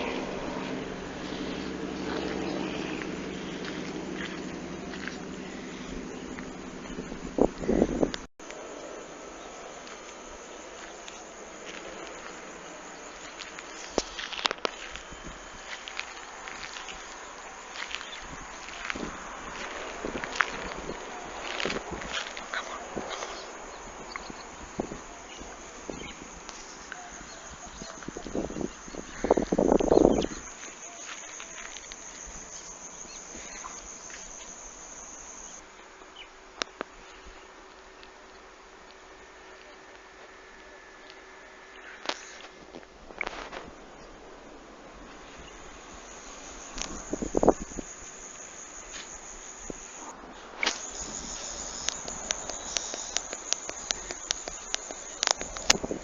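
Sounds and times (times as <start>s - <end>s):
insects chirping and buzzing: 0.0s - 56.0s
high-pitched insect chirring: 22.2s - 35.6s, 46.0s - 56.0s.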